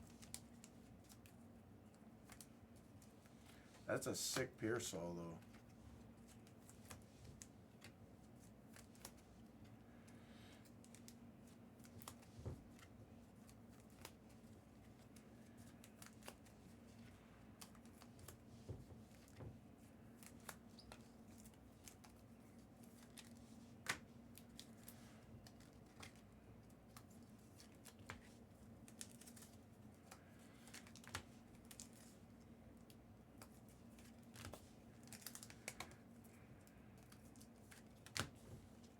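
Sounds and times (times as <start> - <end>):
trading cards being handled: 20.2 - 36.3.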